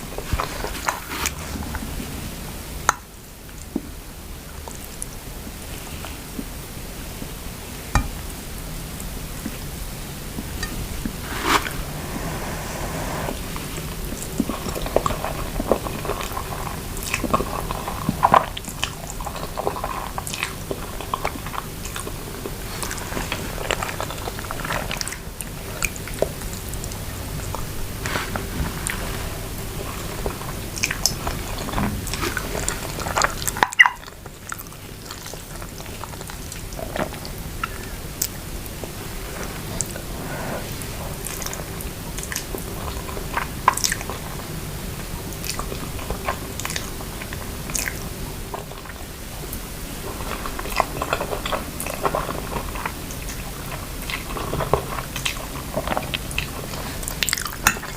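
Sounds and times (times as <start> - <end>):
steady hiss: 0.0 - 17.3, 37.2 - 42.8
person chewing noodles: 7.7 - 57.9.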